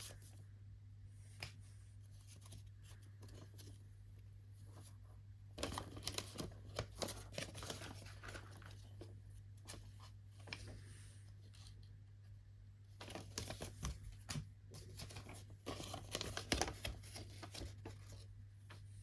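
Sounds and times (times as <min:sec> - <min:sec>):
faint steady hum: 0:00.0 - 0:19.0
packaging rustling and crinkling: 0:05.6 - 0:09.1, 0:13.0 - 0:18.0.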